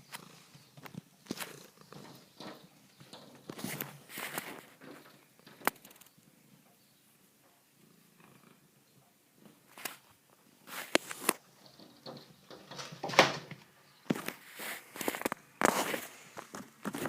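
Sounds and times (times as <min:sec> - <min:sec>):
cat purring: 0:00.0 - 0:03.1, 0:07.8 - 0:09.0.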